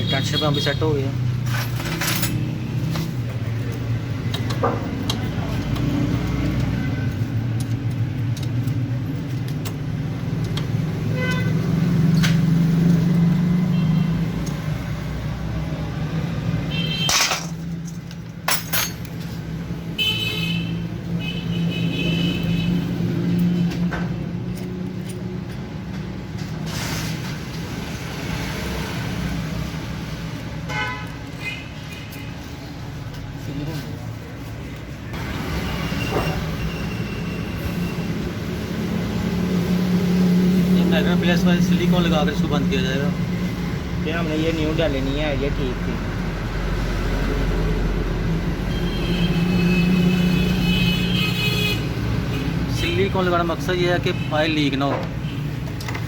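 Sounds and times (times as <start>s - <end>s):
vehicle engines running: 0.9s - 20.0s, 21.8s - 30.6s, 31.2s - 50.9s
car horns honking: 11.0s - 12.2s, 16.6s - 17.5s, 20.0s - 23.3s, 30.7s - 32.2s, 48.7s - 53.2s.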